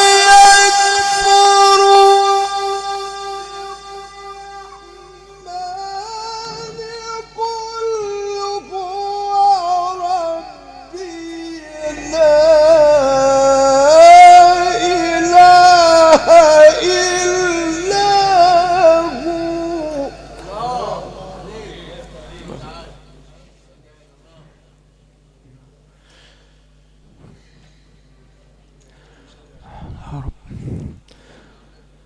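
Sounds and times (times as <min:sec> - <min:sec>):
man reciting melodically: 0:00.0 - 0:23.0.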